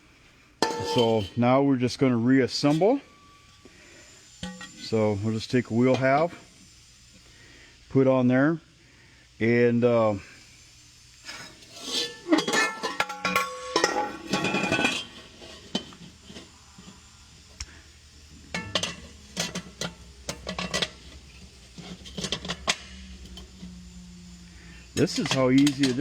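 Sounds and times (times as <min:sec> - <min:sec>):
metal wheel parts clanking: 0:00.6 - 0:01.5, 0:04.4 - 0:06.4, 0:11.3 - 0:17.0, 0:18.4 - 0:26.0.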